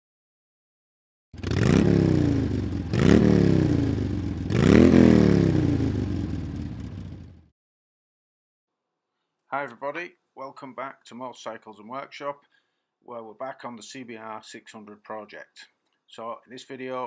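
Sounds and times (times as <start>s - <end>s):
motorcycle engine revving: 1.4s - 7.5s.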